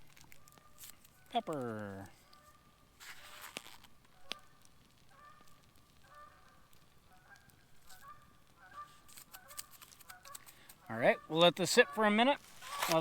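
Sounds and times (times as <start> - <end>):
geese honking: 4.2 - 13.0.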